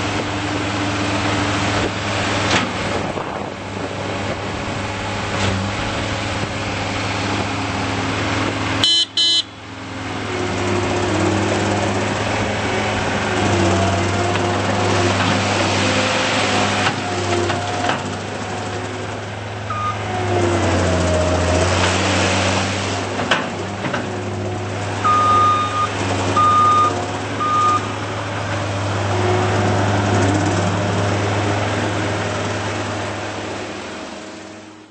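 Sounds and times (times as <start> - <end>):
diesel engine running: 0.0 - 34.9
backup alarm beeping: 8.8 - 9.6, 19.7 - 20.0, 25.0 - 27.9.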